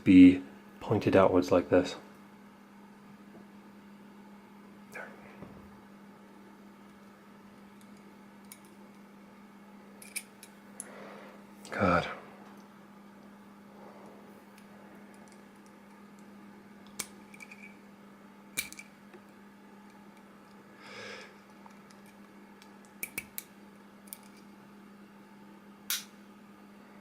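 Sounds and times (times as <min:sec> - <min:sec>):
steady low hum: 0:00.0 - 0:27.0
clicks of pistol parts: 0:25.9 - 0:26.1.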